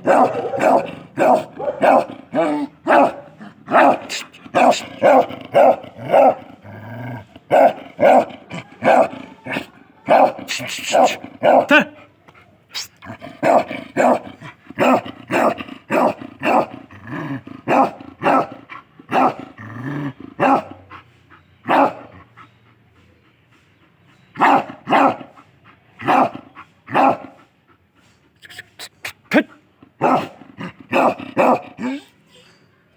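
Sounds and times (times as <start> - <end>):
dog barking: 0.0 - 6.5, 7.5 - 11.9, 13.4 - 16.8, 17.6 - 19.5, 20.4 - 20.9, 21.6 - 22.1, 24.4 - 25.4, 26.0 - 27.4, 30.0 - 32.1.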